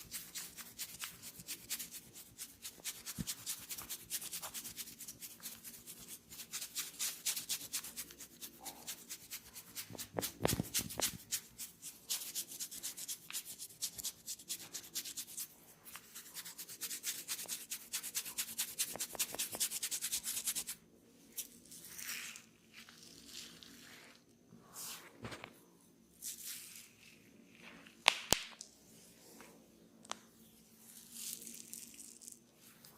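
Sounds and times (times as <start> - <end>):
hands rubbing skin and hair: 0.1 - 20.8.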